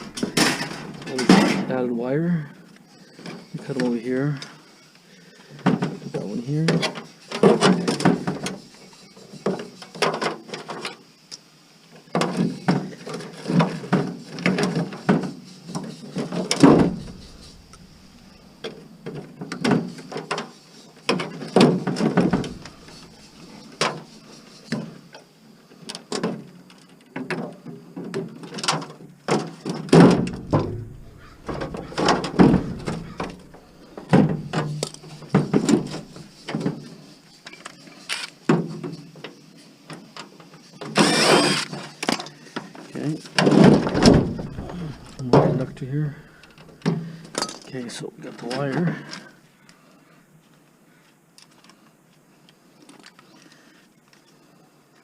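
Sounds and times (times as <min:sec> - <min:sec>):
metal parts knocking and rattling: 0:00.0 - 0:01.7, 0:15.8 - 0:19.3, 0:21.1 - 0:24.0, 0:29.4 - 0:36.8, 0:43.4 - 0:47.7.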